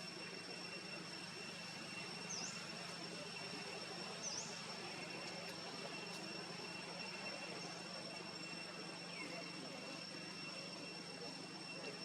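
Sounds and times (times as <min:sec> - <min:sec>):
high-pitched insect drone: 0:00.0 - 0:12.0.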